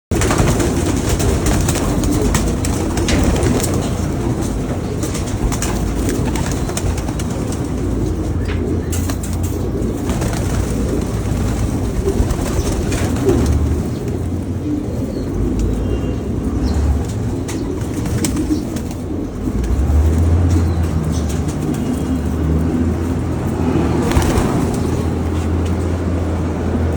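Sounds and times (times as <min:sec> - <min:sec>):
pigeons cooing: 0:00.2 - 0:26.9.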